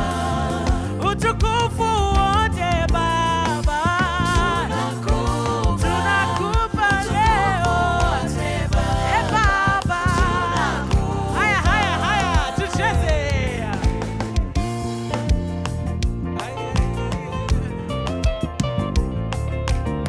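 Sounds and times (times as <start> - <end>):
voices singing: 0.0 - 14.4
gospel band playing: 0.0 - 20.0.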